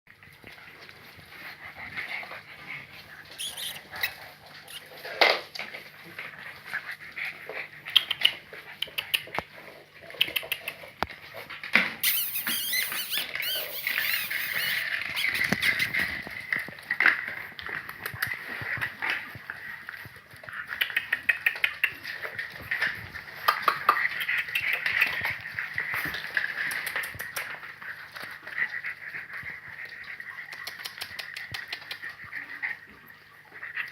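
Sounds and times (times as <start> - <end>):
puppies squeaking and whimpering: 1.0 - 5.2, 11.9 - 33.9.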